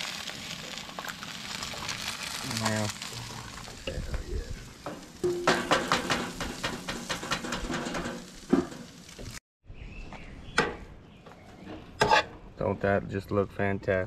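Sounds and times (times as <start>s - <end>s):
food sizzling on a stove: 0.0s - 9.4s
utensil scraping cookware: 4.9s - 9.0s, 11.9s - 12.4s.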